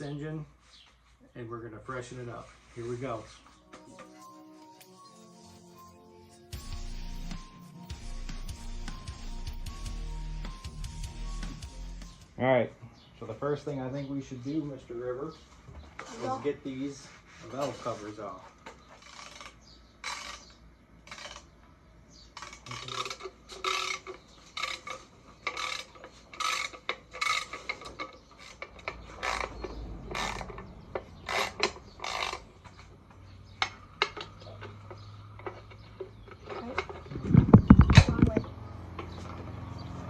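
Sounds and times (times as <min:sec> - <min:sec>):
ratchet wrench rasping: 0:18.9 - 0:21.5, 0:22.4 - 0:32.5.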